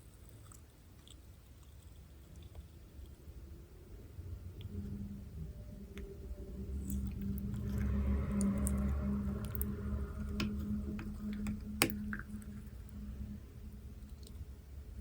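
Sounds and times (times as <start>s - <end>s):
sticky slime squishing and crackling: 6.8s - 13.0s.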